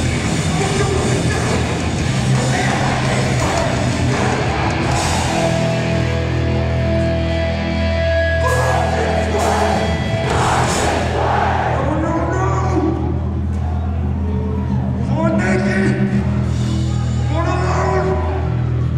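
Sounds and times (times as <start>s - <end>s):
yelled vocals: 0.0s - 6.5s, 8.3s - 12.3s
punk band playing live: 0.0s - 11.6s.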